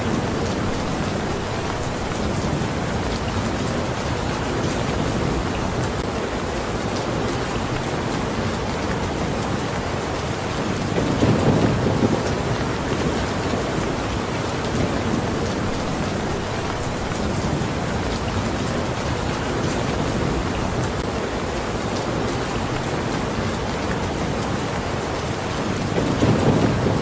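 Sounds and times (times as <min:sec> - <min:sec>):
raindrops ticking: 0:00.0 - 0:27.0
steady rain hiss: 0:00.0 - 0:27.0
thunder rumble: 0:11.0 - 0:21.1, 0:26.0 - 0:27.0.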